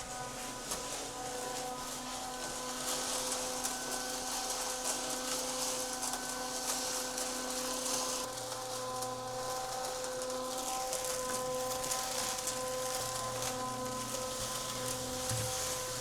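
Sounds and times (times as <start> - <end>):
concrete mixer motor hum: 0.0 - 16.0.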